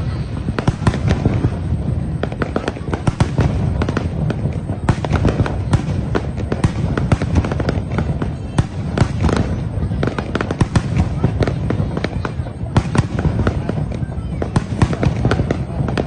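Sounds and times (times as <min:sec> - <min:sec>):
fireworks bangs and crackles: 0:00.0 - 0:16.0.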